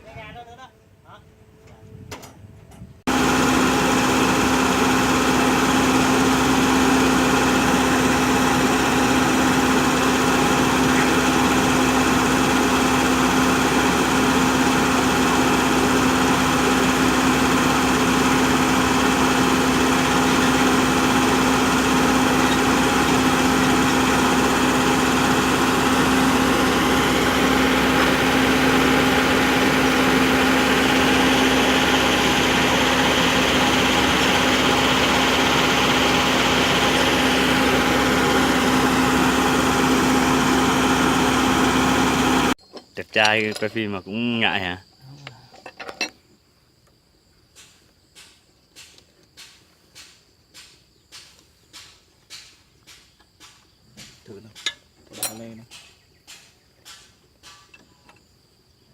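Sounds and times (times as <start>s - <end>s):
engine running steadily: 0.0s - 42.6s.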